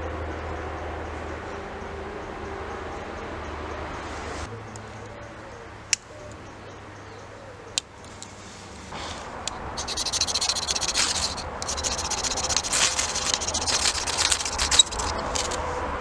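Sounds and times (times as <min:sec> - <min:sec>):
rough scraping strokes: 0:08.3 - 0:15.8.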